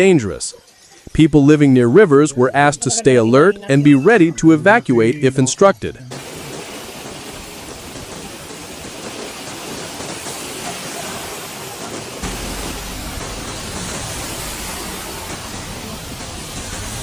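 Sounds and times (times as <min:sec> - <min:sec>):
heavy rain: 0:06.1 - 0:17.0.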